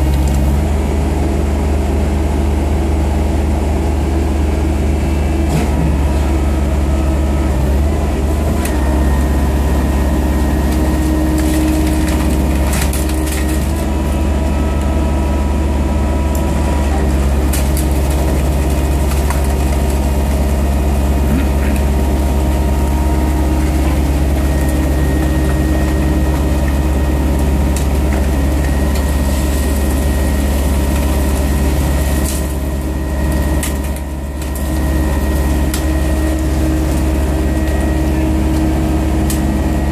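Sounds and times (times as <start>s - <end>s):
baler engine drone: 0.0s - 39.9s.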